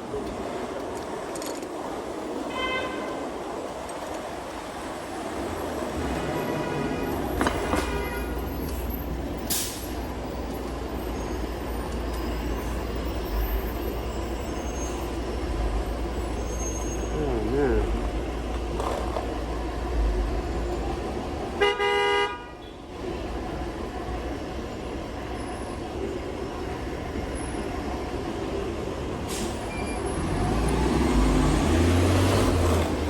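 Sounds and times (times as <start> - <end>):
low traffic rumble: 0.0 - 33.0
road and wind noise: 0.0 - 33.0
vehicle horn honk: 21.6 - 22.8.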